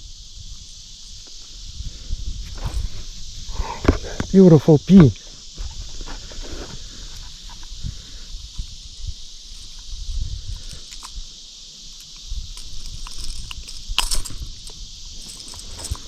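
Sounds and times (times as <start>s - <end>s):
high insect buzz: 0.0s - 16.0s
sharp clicks and rustles: 10.5s - 11.2s, 12.0s - 16.0s.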